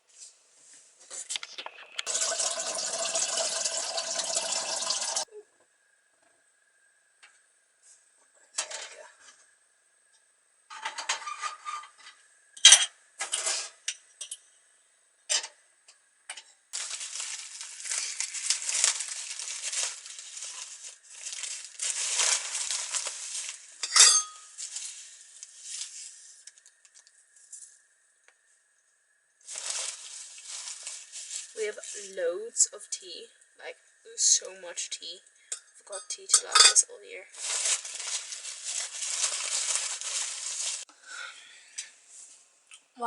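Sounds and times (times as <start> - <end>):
crockery and cutlery clattering: 23.8 - 24.5.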